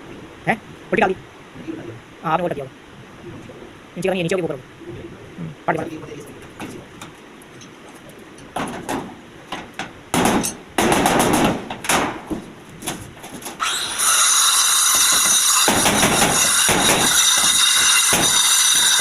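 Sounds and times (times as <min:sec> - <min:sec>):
power tool whining: 0:13.6 - 0:19.0
hammer clanging on steel: 0:14.6 - 0:19.0.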